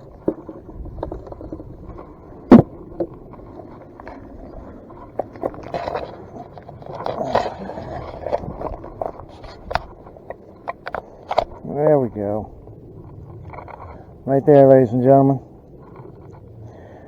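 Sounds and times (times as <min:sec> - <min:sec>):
rustling and scraping: 0:00.0 - 0:11.7, 0:12.9 - 0:14.2.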